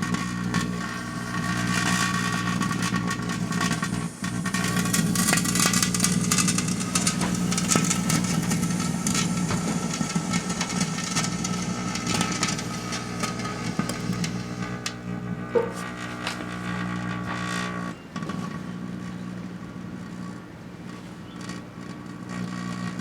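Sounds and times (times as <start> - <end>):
fireworks hissing and crackling: 0.0 - 17.4
microwave hum: 0.0 - 23.0.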